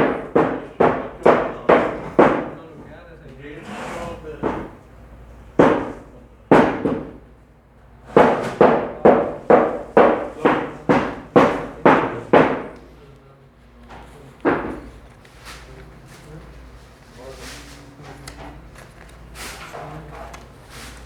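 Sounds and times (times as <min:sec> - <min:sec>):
cleaver chopping meat on wood: 0:00.0 - 0:02.6, 0:08.2 - 0:12.8.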